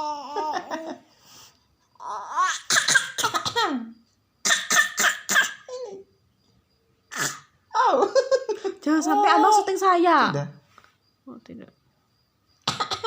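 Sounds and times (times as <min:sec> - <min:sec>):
child laughing: 0:00.0 - 0:01.0
child coughing: 0:02.4 - 0:05.9, 0:07.1 - 0:07.5, 0:12.6 - 0:13.0.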